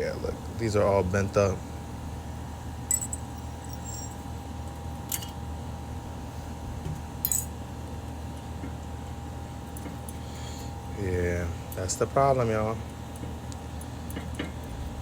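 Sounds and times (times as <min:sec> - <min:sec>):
steady background hum: 0:00.0 - 0:15.0
light metallic clinks: 0:02.9 - 0:04.3.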